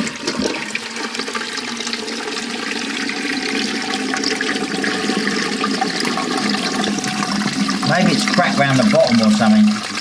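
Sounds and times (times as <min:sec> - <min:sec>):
toilet cistern refilling: 0:00.0 - 0:10.0.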